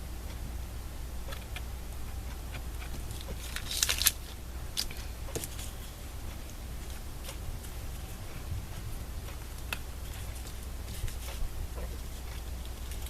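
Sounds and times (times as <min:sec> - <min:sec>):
low room hum: 0:00.0 - 0:13.0
paper rustling and crinkling: 0:03.0 - 0:06.0, 0:10.0 - 0:13.0.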